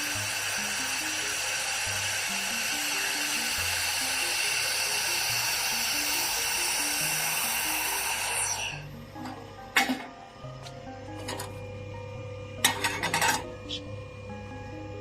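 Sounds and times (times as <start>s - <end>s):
high-speed motor whining: 0.0s - 9.0s
background music: 0.0s - 15.0s.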